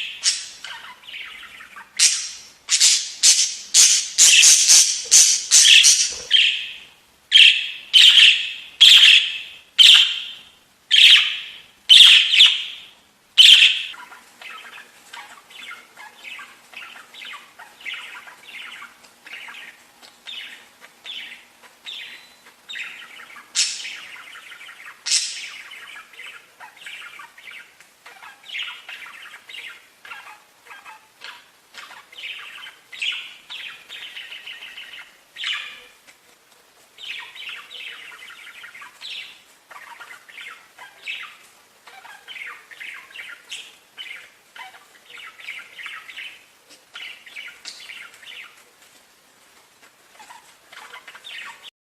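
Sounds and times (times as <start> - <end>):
budgerigars harsh calls: 0.0 - 36.0
budgerigars warbling chatter: 0.0 - 36.0, 37.0 - 48.6, 50.1 - 51.7.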